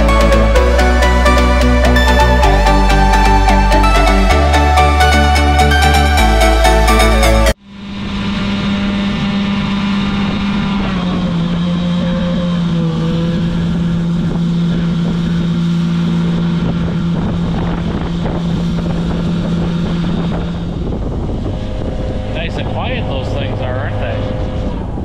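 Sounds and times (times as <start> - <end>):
tractor engine running: 0.0 - 25.0
wind on microphone: 7.8 - 25.0.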